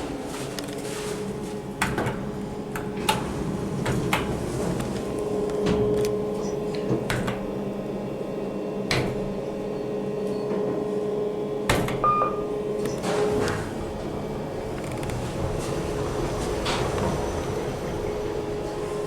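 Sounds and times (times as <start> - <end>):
lift humming: 0.0 - 19.0
held tone: 12.0 - 13.0
short high beep: 12.1 - 12.5.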